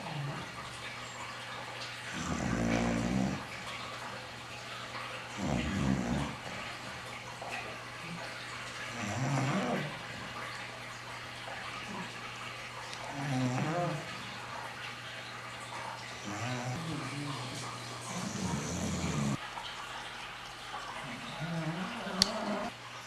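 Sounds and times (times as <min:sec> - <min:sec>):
dog snoring: 0:02.1 - 0:03.6, 0:05.4 - 0:06.7, 0:08.9 - 0:10.2, 0:13.0 - 0:14.4, 0:16.2 - 0:19.4, 0:21.1 - 0:22.7.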